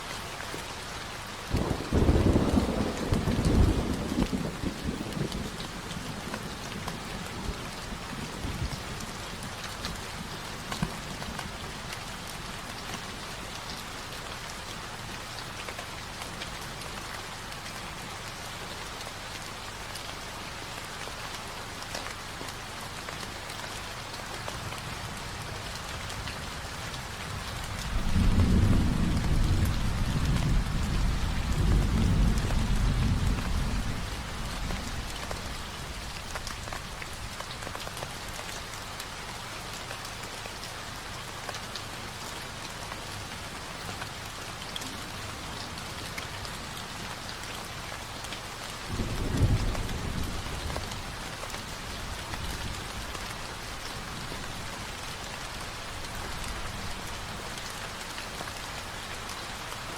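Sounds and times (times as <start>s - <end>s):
steady rainfall: 0.0s - 59.9s
low roll of thunder: 1.5s - 8.8s, 27.3s - 37.2s, 48.9s - 51.2s.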